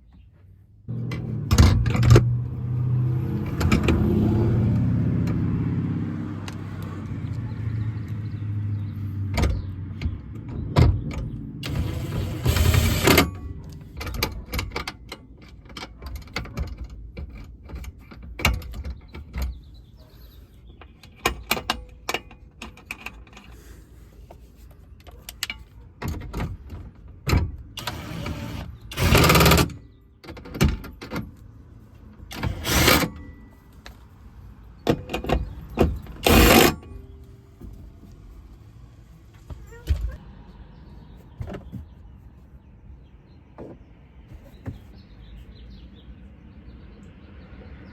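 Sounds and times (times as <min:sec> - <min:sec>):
tools clicking and knocking: 0:20.8 - 0:23.8, 0:32.2 - 0:34.0, 0:34.8 - 0:37.8
short rasping bursts: 0:32.4 - 0:33.2.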